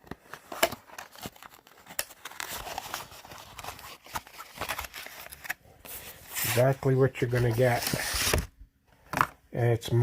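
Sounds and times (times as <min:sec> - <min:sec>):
packaging crinkling: 0:00.2 - 0:06.4.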